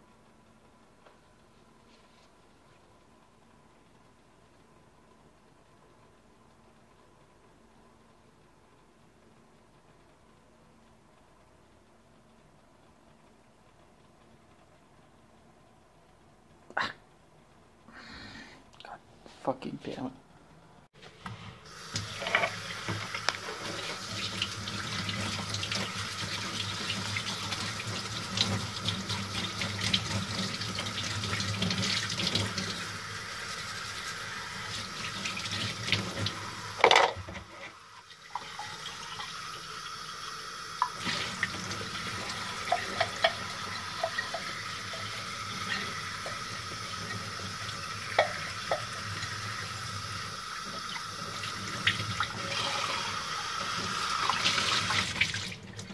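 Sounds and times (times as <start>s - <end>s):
water running: 21.0s - 55.9s.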